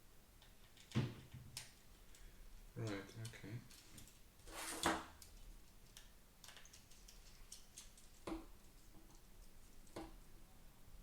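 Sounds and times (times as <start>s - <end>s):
small parts clicking and tapping: 5.2s - 10.2s.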